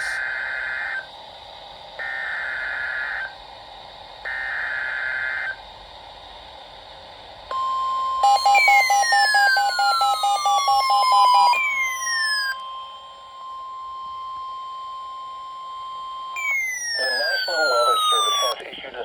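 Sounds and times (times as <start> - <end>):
screeching digital data bursts: 0.0 - 1.1, 2.0 - 3.3, 8.2 - 14.1, 16.4 - 18.8
radio hiss: 0.0 - 7.5, 16.4 - 19.0.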